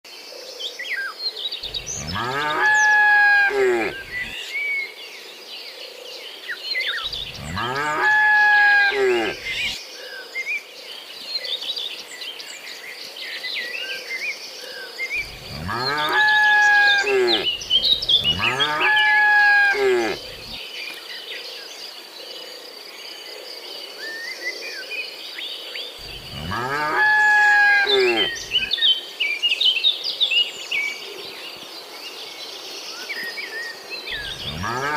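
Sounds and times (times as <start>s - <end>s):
birds chirping: 1.6s - 4.6s, 6.9s - 9.8s, 15.1s - 20.6s, 26.0s - 28.8s, 34.0s - 34.9s
insects chirping: 1.6s - 4.6s, 6.9s - 9.8s, 15.2s - 20.6s, 26.0s - 28.8s
cattle mooing: 1.7s - 4.4s, 7.0s - 9.8s, 15.2s - 20.6s, 26.0s - 28.7s, 34.2s - 34.9s.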